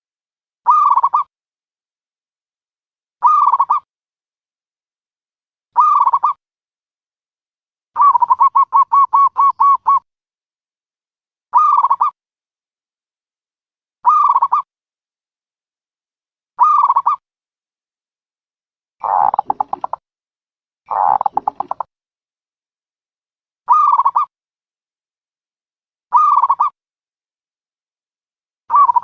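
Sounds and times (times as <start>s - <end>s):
dove cooing calls: 8.0s - 10.0s, 19.0s - 20.0s, 20.9s - 21.8s, 28.7s - 29.0s.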